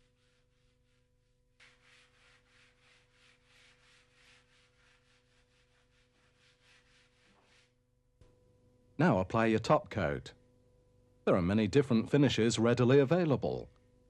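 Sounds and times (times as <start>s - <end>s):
sandpaper rubbing on wood: 0.0s - 7.8s.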